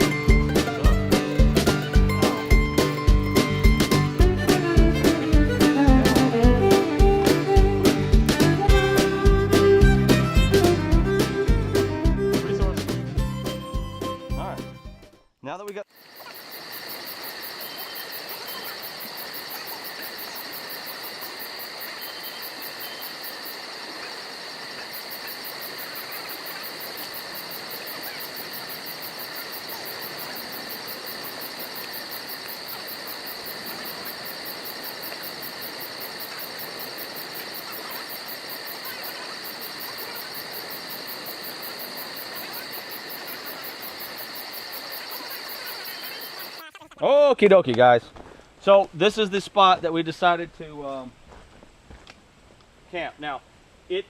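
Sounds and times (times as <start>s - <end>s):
insect chorus buzzing: 15.9s - 46.6s
fast insect trill: 15.9s - 46.7s.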